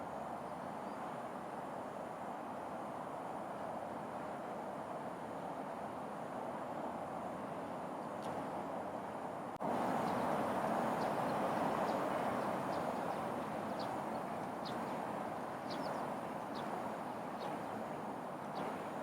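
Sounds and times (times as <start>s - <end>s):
background hiss: 9.6s - 19.0s
high bird chirps: 15.7s - 19.0s.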